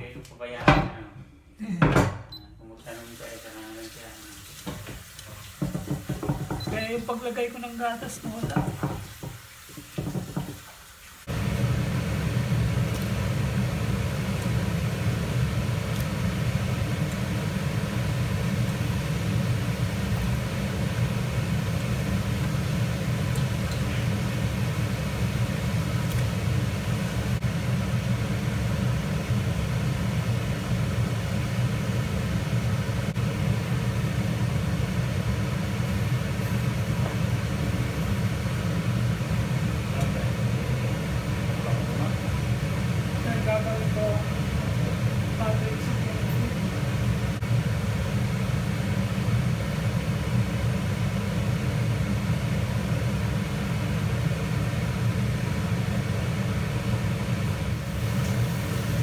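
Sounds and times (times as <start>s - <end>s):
faint hiss: 2.8s - 5.6s.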